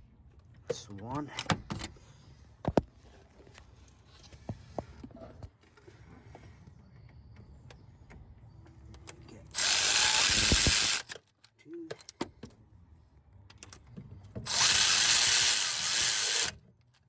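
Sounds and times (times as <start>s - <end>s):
socket ratchet clicking: 14.5s - 16.5s.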